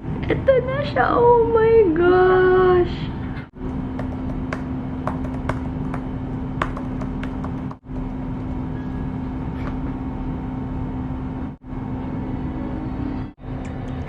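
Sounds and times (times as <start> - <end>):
steady background hum: 0.0 - 14.0.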